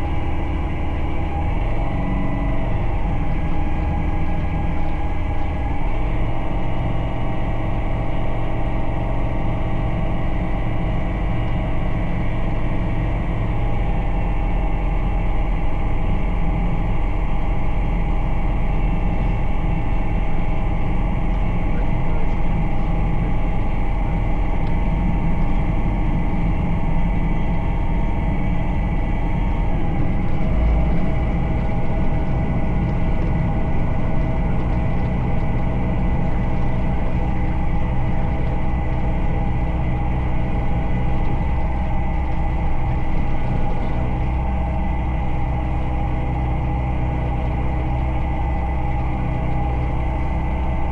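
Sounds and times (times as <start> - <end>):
light aircraft engine droning: 0.0 - 50.9.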